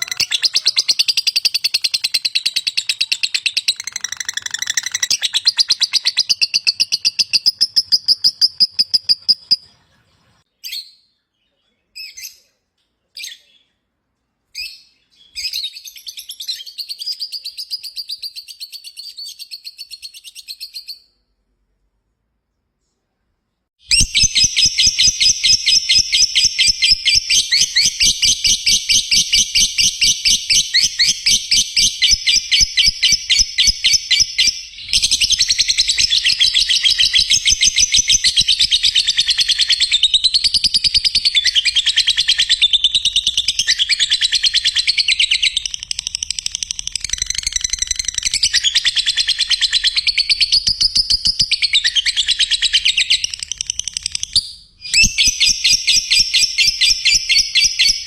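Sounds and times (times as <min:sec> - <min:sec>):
bird chirping rapidly: 0:00.0 - 0:09.8, 0:23.8 - 0:58.0.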